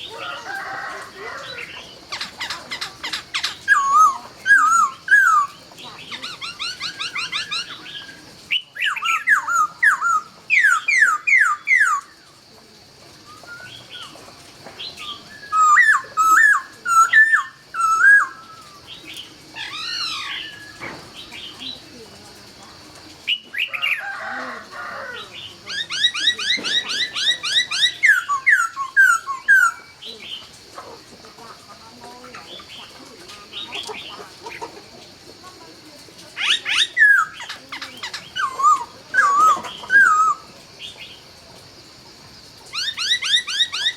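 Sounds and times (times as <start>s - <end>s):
bird singing whistled phrases: 3.4s - 5.6s, 6.3s - 12.1s, 13.2s - 14.1s, 15.0s - 21.4s, 25.8s - 30.0s, 36.4s - 40.5s.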